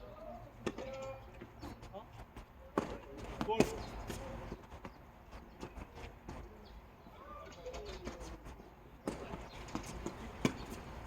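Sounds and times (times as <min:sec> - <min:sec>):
tennis ball bouncing on hard court: 0:02.8 - 0:04.2, 0:09.0 - 0:11.0.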